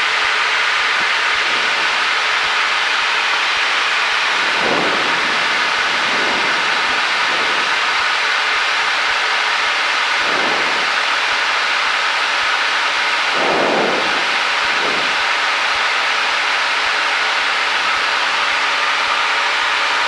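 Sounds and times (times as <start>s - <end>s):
airplane engine and propeller drone: 0.0s - 20.0s
air rushing past: 3.7s - 8.5s, 10.0s - 11.4s, 13.2s - 16.0s.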